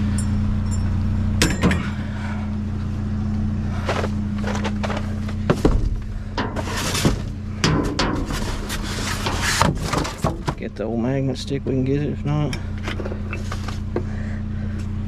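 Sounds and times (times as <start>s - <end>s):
vehicle engine idling: 0.0s - 15.0s
scrap metal clanking: 3.7s - 10.7s.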